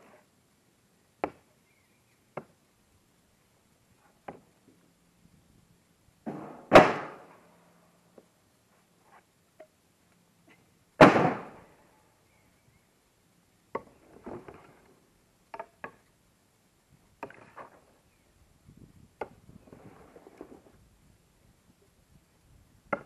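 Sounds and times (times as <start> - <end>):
heavy firewood thud: 6.3 - 7.3, 11.0 - 11.6.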